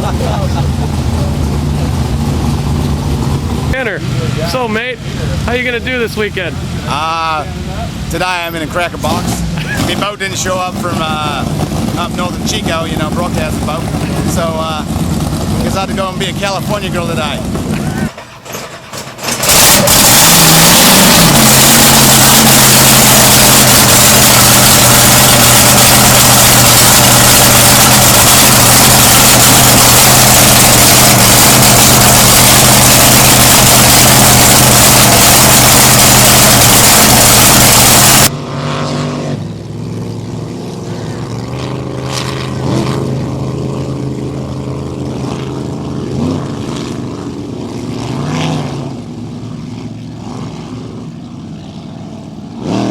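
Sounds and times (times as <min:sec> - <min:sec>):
loud boat engine running: 0:00.0 - 0:18.2, 0:19.2 - 0:52.9.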